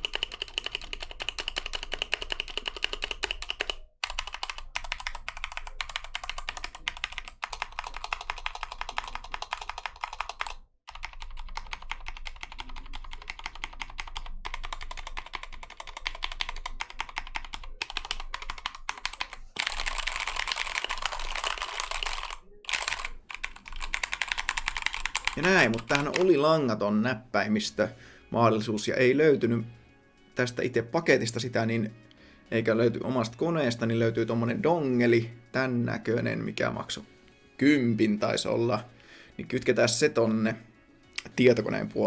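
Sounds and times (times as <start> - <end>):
mechanical keyboard typing: 0.0 - 26.5.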